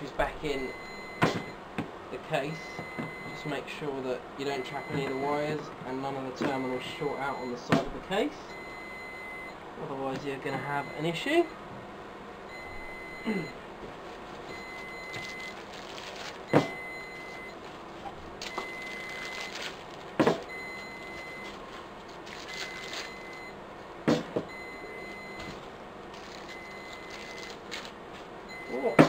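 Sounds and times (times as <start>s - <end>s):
high electronic beep: 28.5s - 29.0s.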